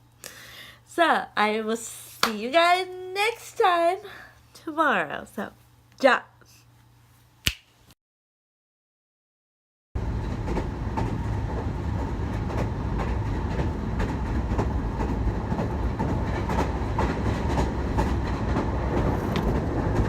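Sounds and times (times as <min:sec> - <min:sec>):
faint steady hum: 0:00.0 - 0:07.4
steady rumble: 0:10.0 - 0:20.0.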